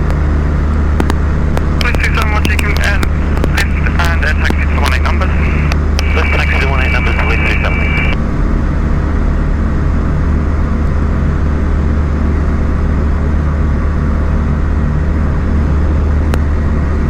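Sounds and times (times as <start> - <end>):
light aircraft engine drone: 0.0 - 17.0.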